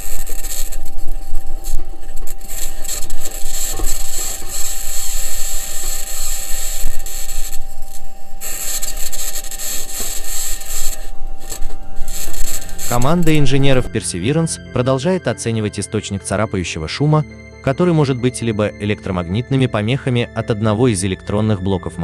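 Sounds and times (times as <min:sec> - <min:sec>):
harsh high-pitched scratching: 0:00.0 - 0:14.0
steady whine: 0:00.0 - 0:22.0.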